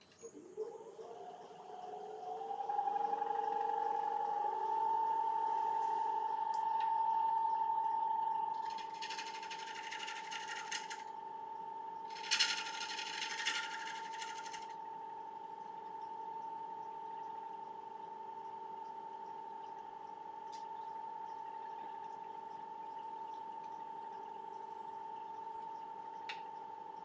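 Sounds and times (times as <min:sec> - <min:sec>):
wood lathe motor whine: 0:08.6 - 0:11.1, 0:12.1 - 0:14.7.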